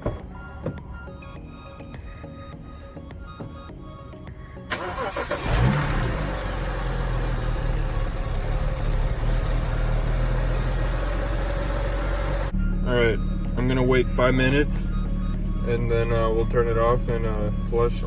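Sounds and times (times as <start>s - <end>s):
car engine starting and idling: 4.7s - 17.7s.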